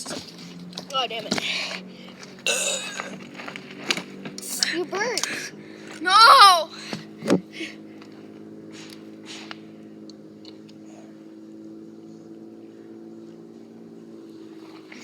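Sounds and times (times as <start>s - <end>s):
low hum of held tones: 0.0s - 15.0s.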